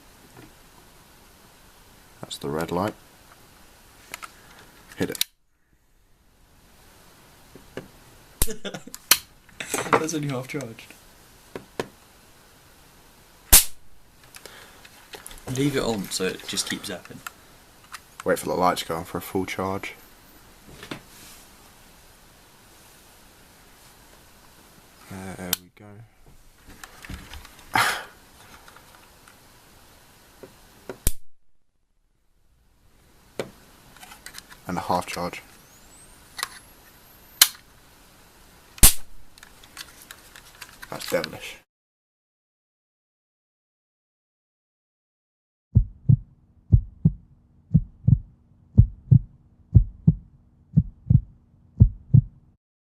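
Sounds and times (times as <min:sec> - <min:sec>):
faint steady hum: 0:00.0 - 0:41.6, 0:45.8 - 0:52.6
faint room noise: 0:00.0 - 0:41.7
sharp electric snap: 0:08.4 - 0:09.3, 0:13.5 - 0:14.0, 0:31.0 - 0:31.3, 0:37.4 - 0:37.7, 0:38.8 - 0:39.4
heartbeat thumps: 0:45.8 - 0:52.4.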